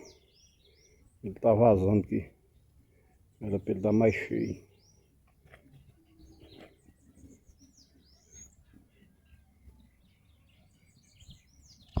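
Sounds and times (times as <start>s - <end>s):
birds chirping and whistling: 0.0s - 1.2s, 6.1s - 8.8s, 9.6s - 12.0s.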